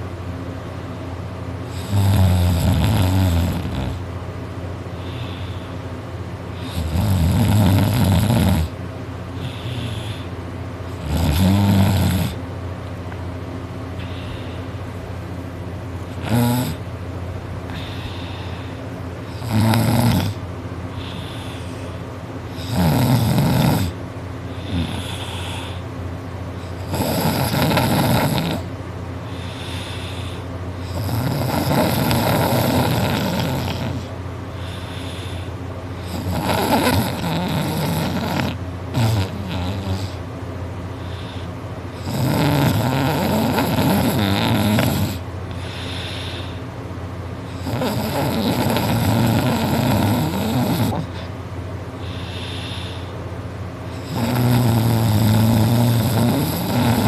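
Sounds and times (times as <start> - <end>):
loud rasping snoring: 1.7 - 4.0, 6.6 - 8.8, 9.4 - 10.3, 10.9 - 12.4, 16.1 - 16.9, 19.3 - 20.4, 21.0 - 25.8, 26.6 - 28.7, 29.4 - 40.2, 41.0 - 46.6, 47.5 - 51.3, 54.0 - 57.0
quiet breathing: 4.9 - 5.9, 14.0 - 15.0, 17.6 - 19.0, 20.9 - 22.1, 24.4 - 26.0, 29.2 - 30.6, 34.5 - 35.7, 40.9 - 41.6, 45.5 - 46.8, 52.0 - 53.3.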